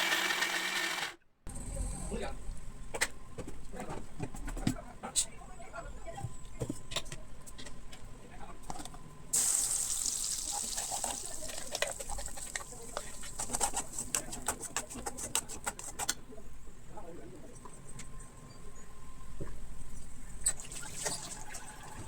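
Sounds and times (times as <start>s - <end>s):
food sizzling in hot oil: 9.4s - 13.1s.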